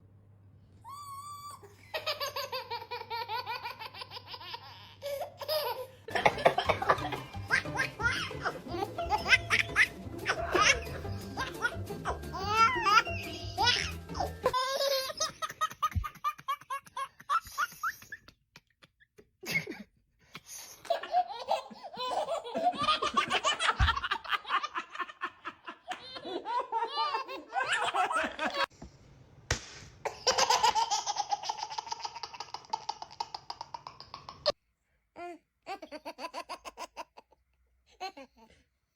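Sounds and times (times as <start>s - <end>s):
baby laughing: 0.9s - 18.7s, 20.6s - 28.7s, 30.1s - 34.6s, 35.7s - 37.4s.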